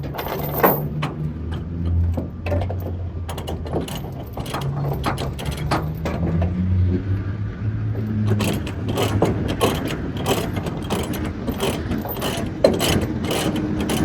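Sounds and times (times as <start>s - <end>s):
ratchet pawl clicking: 8.3s - 14.0s.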